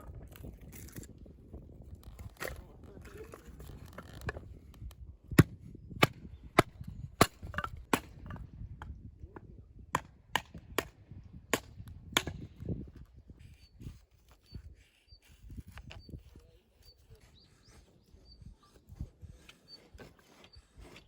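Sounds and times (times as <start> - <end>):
axe chopping firewood: 5.3 - 12.8.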